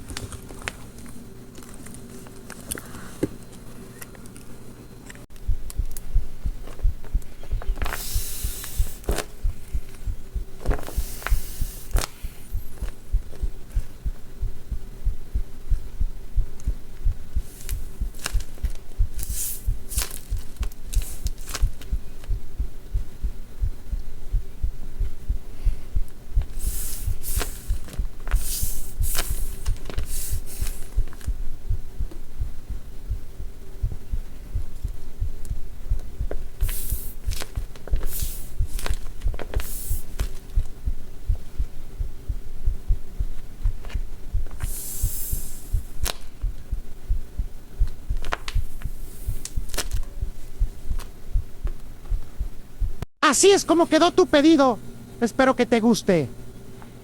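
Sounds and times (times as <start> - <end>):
paper rustling and scraping: 27.4 - 31.2.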